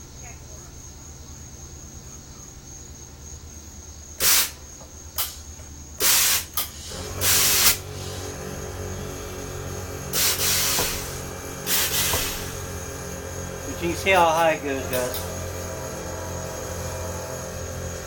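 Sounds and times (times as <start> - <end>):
air compressor humming: 3.9 - 18.0
compressed air hissing: 4.1 - 18.0.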